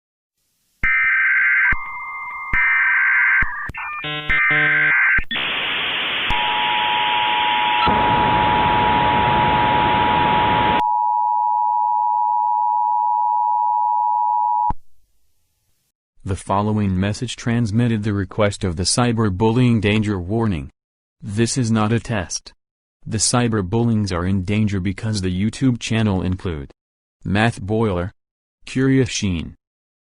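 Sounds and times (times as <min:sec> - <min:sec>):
warbling electronic data tones: 0:00.9 - 0:10.8
loud static hiss: 0:04.0 - 0:10.8
two-tone attention signal: 0:06.3 - 0:11.0.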